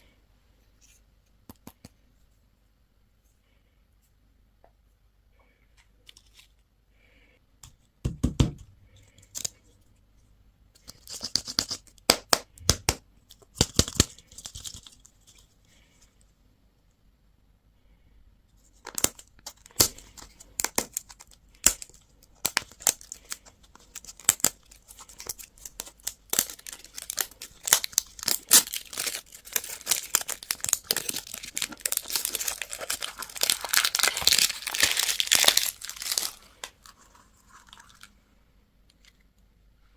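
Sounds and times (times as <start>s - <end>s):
plastic packaging crinkling and tearing: 18.9s - 38.1s.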